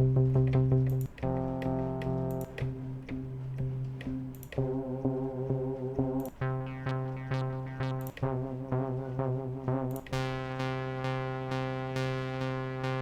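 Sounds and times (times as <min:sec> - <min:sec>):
synthesizer pulsing chords: 0:00.0 - 0:13.0.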